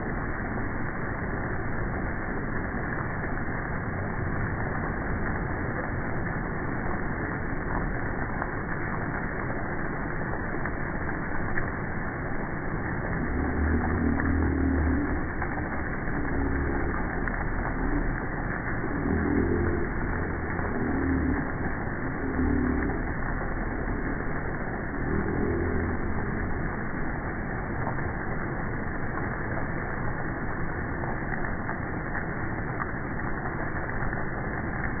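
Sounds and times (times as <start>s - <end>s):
heavy rain falling: 0.0s - 35.0s.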